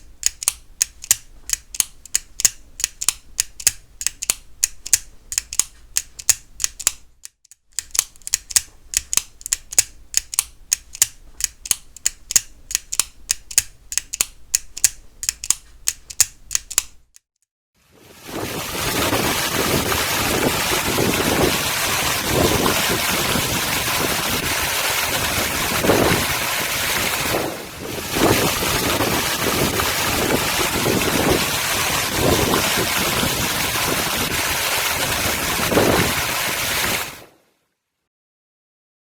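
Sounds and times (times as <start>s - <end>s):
wind and surf rushing: 17.8s - 37.4s.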